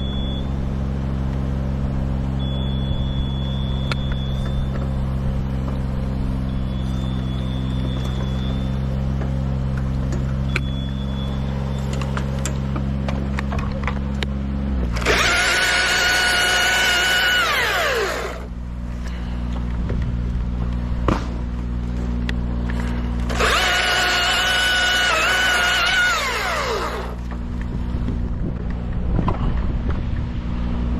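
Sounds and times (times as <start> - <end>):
low engine drone: 0.0 - 30.9
chainsaw revving: 14.8 - 18.5, 23.3 - 27.2.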